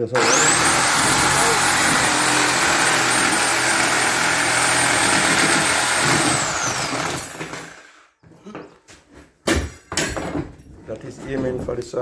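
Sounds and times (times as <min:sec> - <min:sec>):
saw motor winding down: 0:00.0 - 0:08.0
power saw whining: 0:00.0 - 0:08.2.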